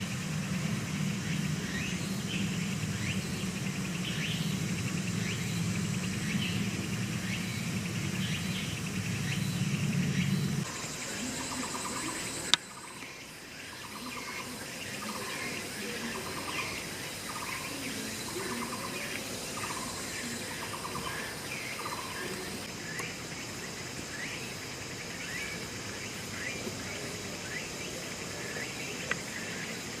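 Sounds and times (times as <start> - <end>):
low hum: 0.0 - 23.8
birds chirping: 0.0 - 30.0
insects: 0.0 - 30.0
trilled bird calls: 0.0 - 30.0.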